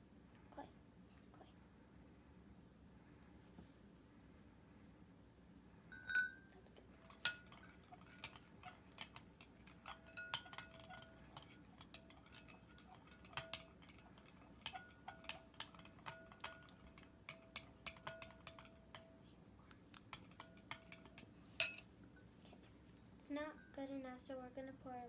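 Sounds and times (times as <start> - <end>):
bowl ringing: 5.9 - 7.9, 9.8 - 19.2
spoon clinking against bowl: 5.9 - 22.3.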